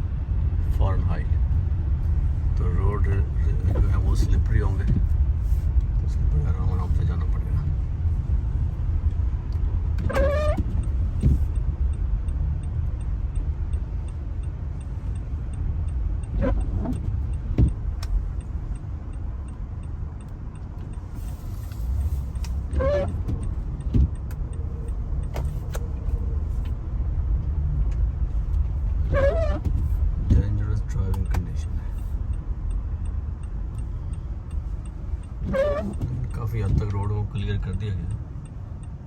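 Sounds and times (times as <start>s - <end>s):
engine and tyre rumble: 0.0s - 39.0s
short squeaks: 10.0s - 11.6s, 16.2s - 17.8s, 21.2s - 26.4s, 29.0s - 30.0s, 35.2s - 36.4s.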